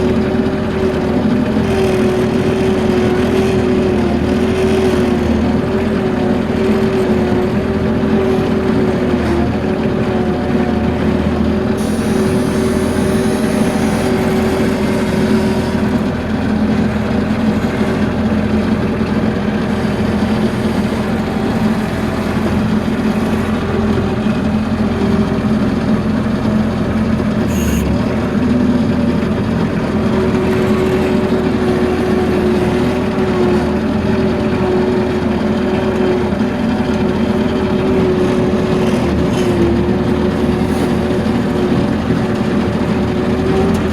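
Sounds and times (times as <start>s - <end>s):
loader engine running: 0.0s - 43.9s.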